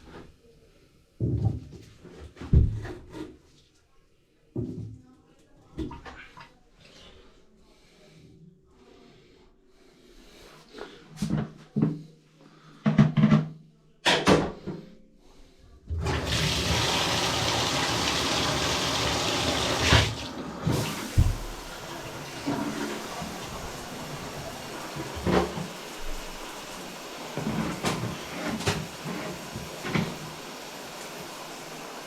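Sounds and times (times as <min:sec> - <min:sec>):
water rushing: 0:16.0 - 0:32.0.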